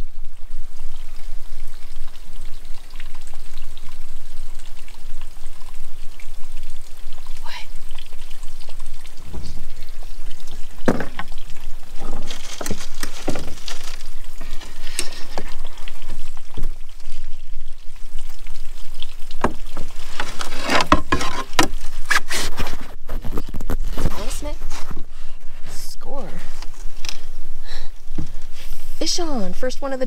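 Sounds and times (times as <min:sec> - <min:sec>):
water trickling and dripping: 0:00.0 - 0:30.0
small splashes: 0:04.6 - 0:24.8.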